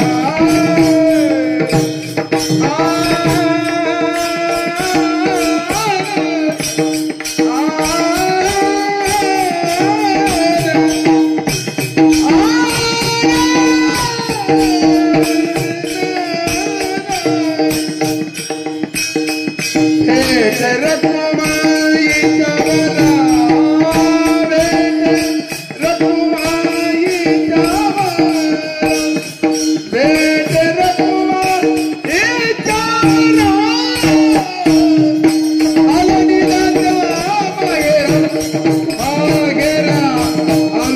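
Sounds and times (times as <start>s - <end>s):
solo voice singing melismatically: 0.0s - 11.4s, 12.1s - 18.3s, 20.0s - 40.9s
fast continuous percussion: 0.0s - 40.9s.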